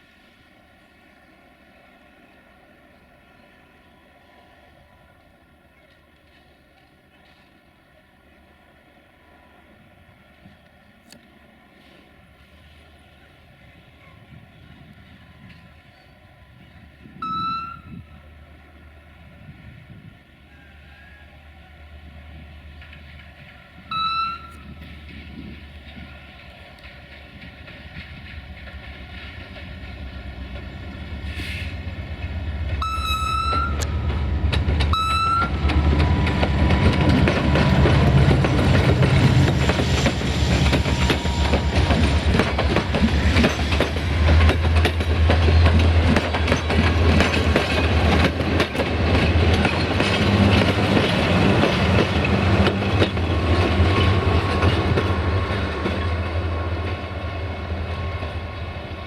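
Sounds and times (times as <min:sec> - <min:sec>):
train engine rumble: 0:00.0 - 0:59.0
train horn toots: 0:17.1 - 0:18.2, 0:23.8 - 0:24.8, 0:32.7 - 0:42.9
train wheel clatter: 0:22.4 - 0:59.0.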